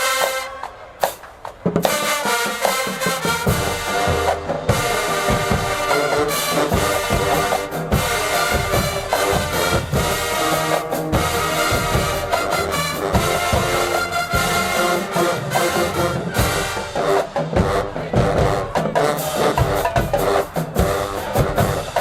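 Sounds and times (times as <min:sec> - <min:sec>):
marching band playing: 0:00.0 - 0:22.0
heavy bass drum strokes: 0:03.4 - 0:22.0.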